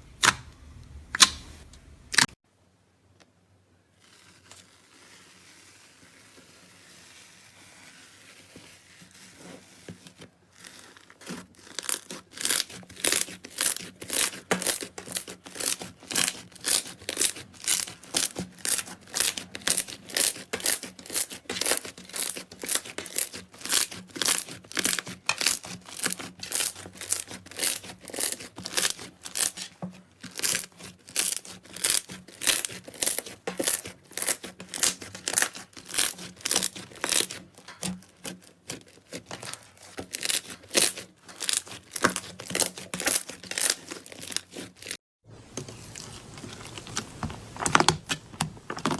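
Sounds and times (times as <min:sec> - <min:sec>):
slime squished by hand: 0:07.1 - 0:45.0.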